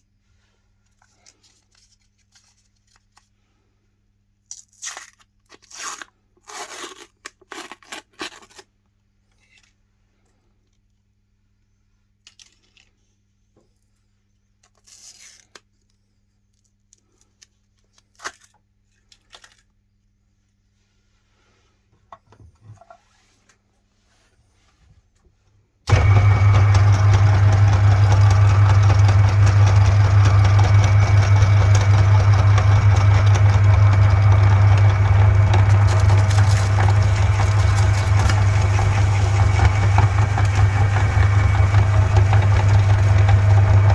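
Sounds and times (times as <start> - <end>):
ice cream cones crackling: 25.9 - 43.9.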